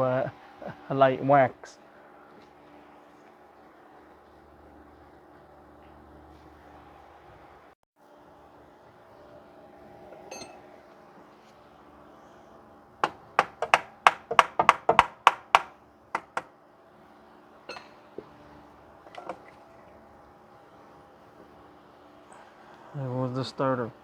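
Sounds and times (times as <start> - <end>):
hammer striking metal: 10.2 - 10.7, 13.0 - 16.5, 17.7 - 18.0.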